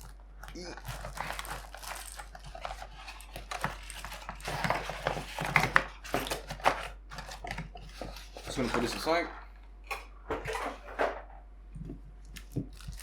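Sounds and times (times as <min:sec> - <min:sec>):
packaging rustling: 0:00.0 - 0:09.2, 0:12.4 - 0:13.0.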